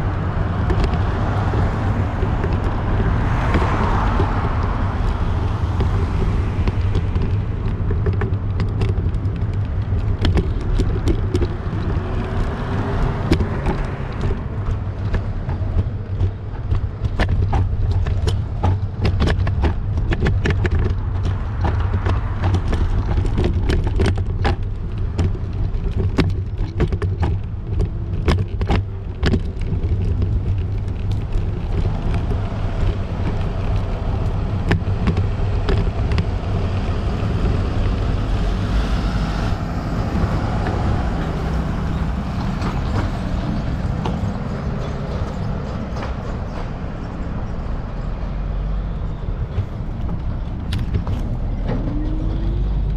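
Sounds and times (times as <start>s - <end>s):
bike clicks and rattles: 0.0s - 52.9s
street traffic noise: 0.0s - 52.9s
wind buffeting microphone: 0.0s - 52.9s.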